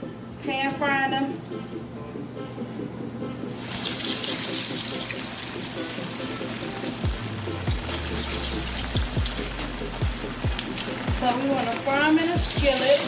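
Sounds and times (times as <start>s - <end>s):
patties sizzling in oil: 3.5s - 13.0s.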